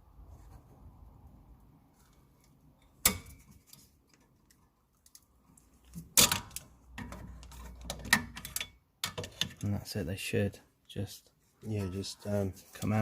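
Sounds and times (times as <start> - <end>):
metal tools clicking and clattering: 7.4 - 9.6.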